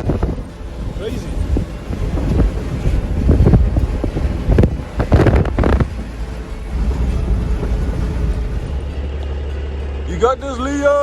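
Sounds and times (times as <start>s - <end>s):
wind buffeting microphone: 0.0s - 10.0s
steady low rumble: 0.0s - 11.0s.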